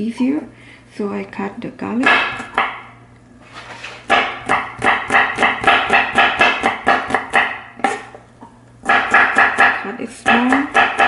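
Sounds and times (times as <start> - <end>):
knife chopping on cutting board: 2.0 - 2.8, 4.0 - 8.2, 8.8 - 11.0.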